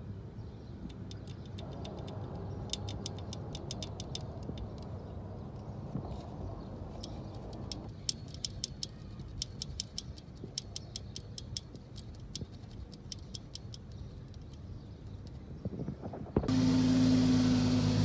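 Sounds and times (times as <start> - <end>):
car engine idling: 16.5 - 18.0.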